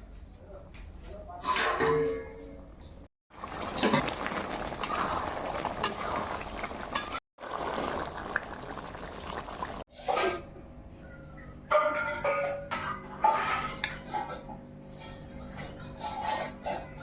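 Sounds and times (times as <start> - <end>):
curry bubbling and sizzling: 3.3 - 9.9.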